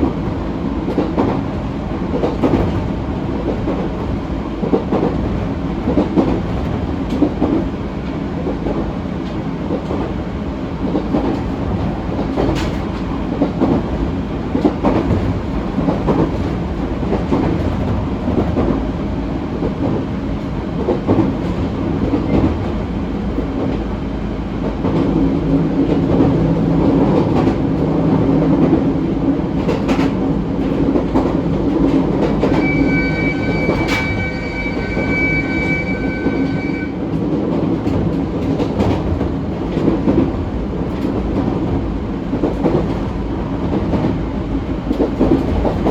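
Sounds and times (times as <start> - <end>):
clickety-clack of rail joints: 0.0 - 45.9
high-pitched whine: 32.4 - 36.9.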